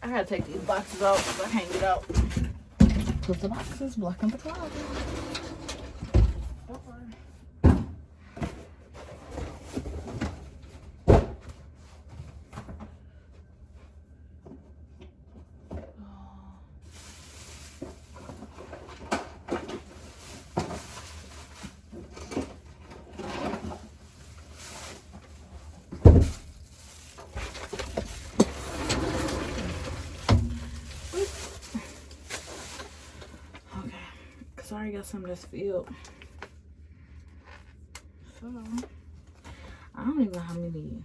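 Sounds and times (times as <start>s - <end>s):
rustling handling of boxes: 0.1s - 5.0s, 17.0s - 33.9s.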